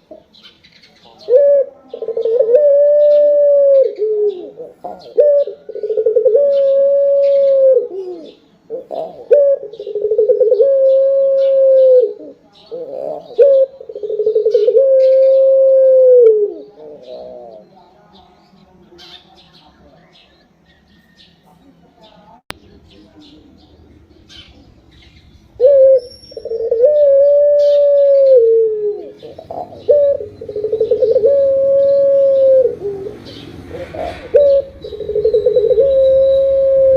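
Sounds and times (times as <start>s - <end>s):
dove cooing: 0.0s - 17.8s, 24.3s - 36.9s
faint small bird chirps: 19.0s - 26.8s.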